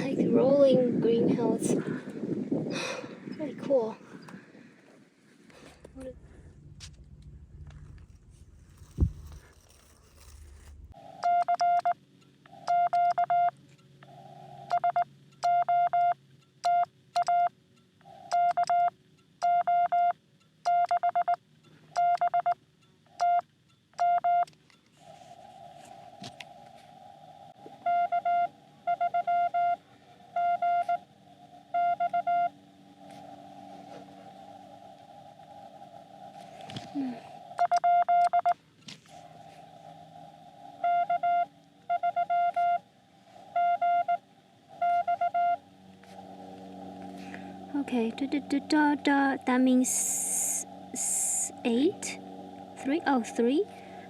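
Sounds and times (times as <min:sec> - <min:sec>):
morse code beeps: 0:11.2 - 0:12.0, 0:12.7 - 0:13.5, 0:14.7 - 0:17.5, 0:18.3 - 0:21.4, 0:22.0 - 0:22.6, 0:23.2 - 0:23.4, 0:24.0 - 0:24.5, 0:27.8 - 0:29.8, 0:30.4 - 0:31.0, 0:31.7 - 0:32.6, 0:37.6 - 0:38.6, 0:40.8 - 0:42.8, 0:43.5 - 0:44.2, 0:44.8 - 0:45.6
receiver hiss: 0:24.9 - 0:54.0.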